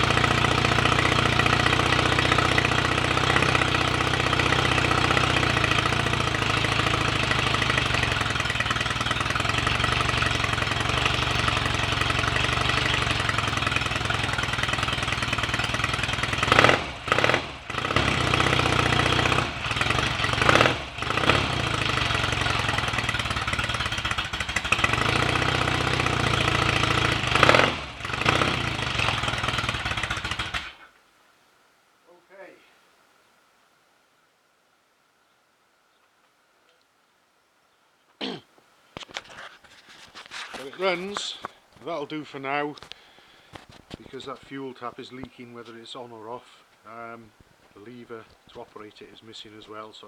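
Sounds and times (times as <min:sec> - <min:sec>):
motorcycle engine revving: 0:00.0 - 0:30.8.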